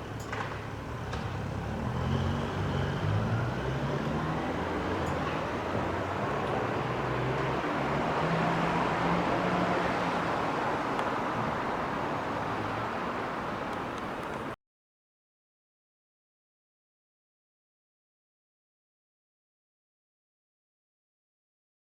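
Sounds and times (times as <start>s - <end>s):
car engines running: 0.0s - 14.6s.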